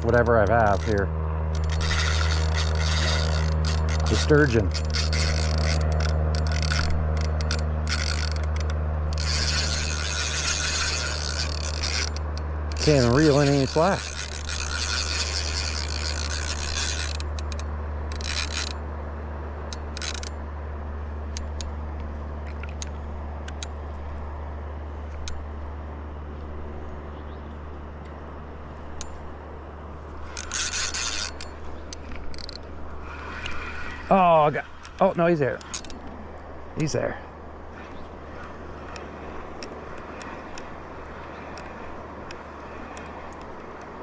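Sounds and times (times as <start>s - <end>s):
fishing reel drag buzzing: 0.0s - 18.8s, 19.7s - 20.4s, 30.0s - 36.5s, 37.6s - 44.0s
reel clicks: 0.0s - 18.9s, 19.6s - 24.4s, 25.0s - 29.4s, 30.0s - 37.0s, 37.6s - 44.0s
steady low hum: 0.0s - 44.0s.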